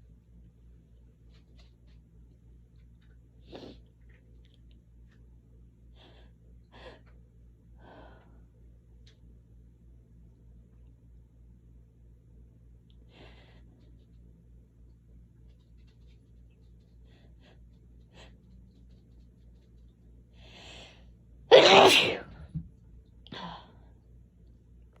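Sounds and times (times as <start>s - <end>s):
breath drawn in: 21.5s - 22.2s
person sneezing: 21.5s - 22.3s.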